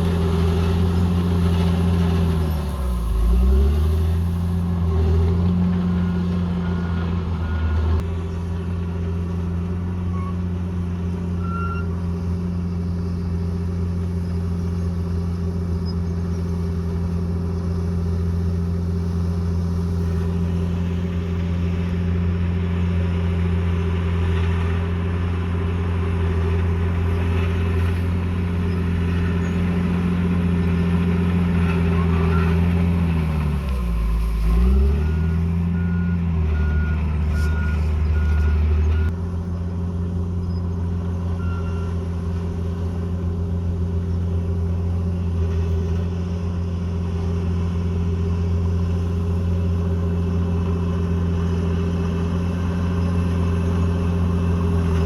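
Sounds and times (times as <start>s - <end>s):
bulldozer diesel engine running: 0.0s - 55.0s.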